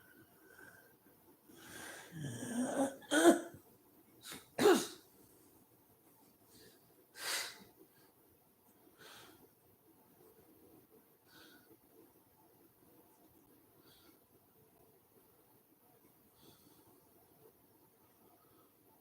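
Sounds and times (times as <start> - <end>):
woman snoring: 1.6 - 3.3
woman coughing: 2.5 - 3.6, 4.6 - 5.0.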